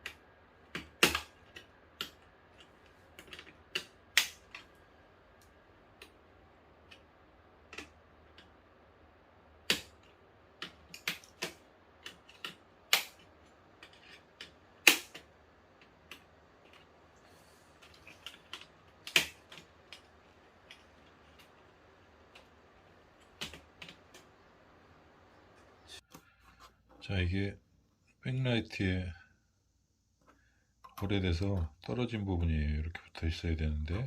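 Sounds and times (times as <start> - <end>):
plastic parts clicking and tapping: 0.0 - 4.7, 9.6 - 17.0, 17.8 - 22.6.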